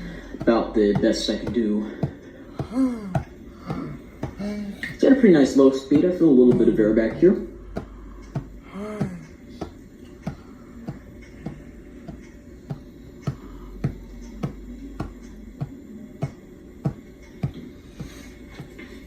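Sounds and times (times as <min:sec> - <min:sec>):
ceiling fan running: 0:00.0 - 0:19.0
steady low hum: 0:00.0 - 0:19.0.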